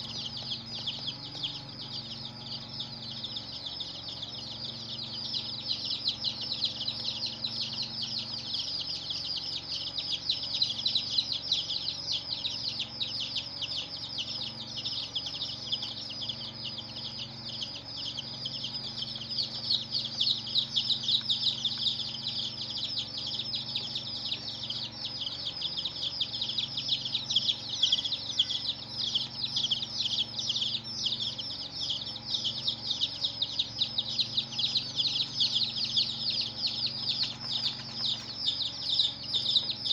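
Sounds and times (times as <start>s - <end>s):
baby chicks peeping: 0.0s - 39.9s
faint low hum: 0.0s - 39.9s.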